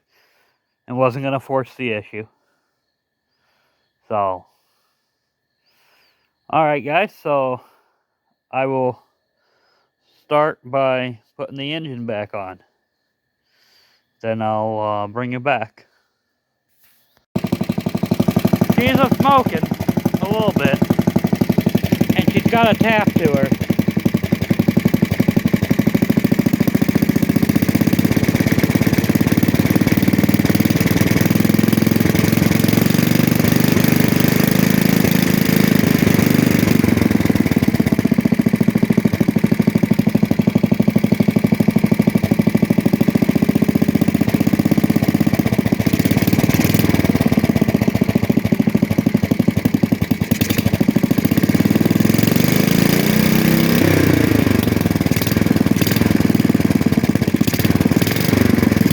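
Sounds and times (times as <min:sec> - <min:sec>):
small tractor engine running: 0:17.4 - 0:58.9.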